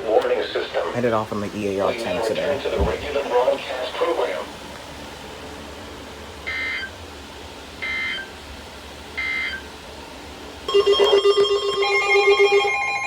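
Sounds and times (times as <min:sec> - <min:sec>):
steady warning alarm tone: 0:06.4 - 0:07.0, 0:07.8 - 0:08.4, 0:09.1 - 0:09.7, 0:10.7 - 0:13.0.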